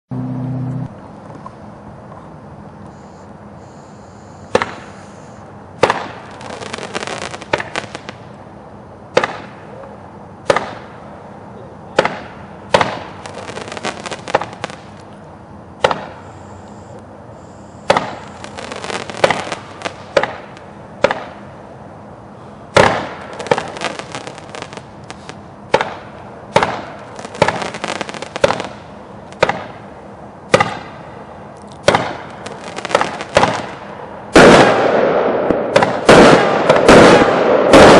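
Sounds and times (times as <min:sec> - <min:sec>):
firework crackling: 0:03.6 - 0:08.4, 0:12.0 - 0:15.1, 0:15.8 - 0:21.6, 0:22.7 - 0:31.2, 0:31.8 - 0:37.9
firework bangs: 0:04.4 - 0:08.4, 0:09.1 - 0:09.8, 0:10.4 - 0:11.1, 0:11.9 - 0:15.0, 0:15.8 - 0:16.4, 0:17.7 - 0:21.6, 0:22.7 - 0:37.9.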